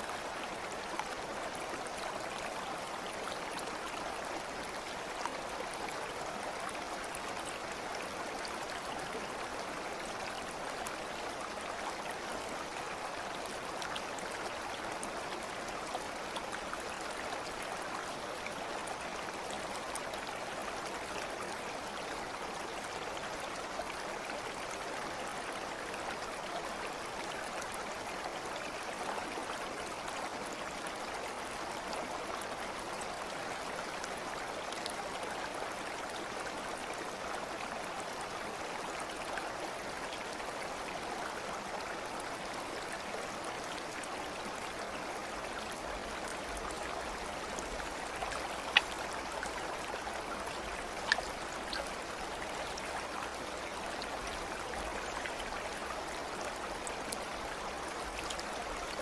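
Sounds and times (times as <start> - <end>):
stream babbling: 0.0 - 59.0
small water splashes: 47.7 - 49.6, 50.3 - 52.0.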